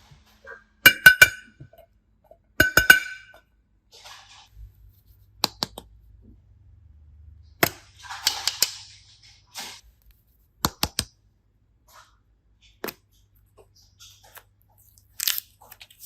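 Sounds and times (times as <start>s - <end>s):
sharp clicks and taps: 10.6s - 11.1s.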